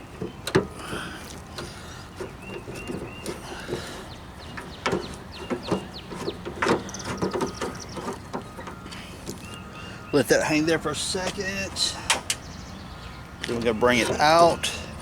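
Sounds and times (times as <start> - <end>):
metallic clicks and knocks: 0.2 - 0.8.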